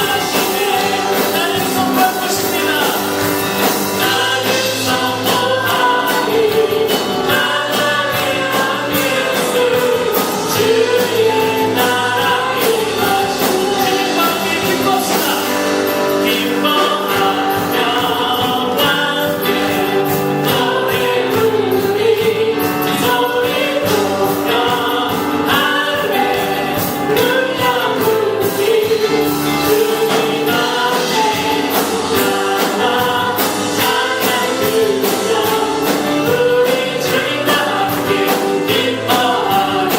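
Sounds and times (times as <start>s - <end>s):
band with steady beat: 0.0s - 39.9s
congregation singing: 0.0s - 39.9s.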